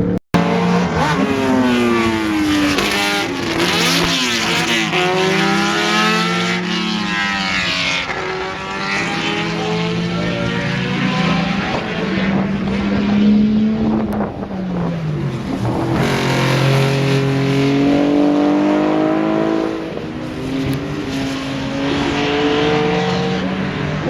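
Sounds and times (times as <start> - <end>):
racing car engines at high revs: 0.0 - 24.0.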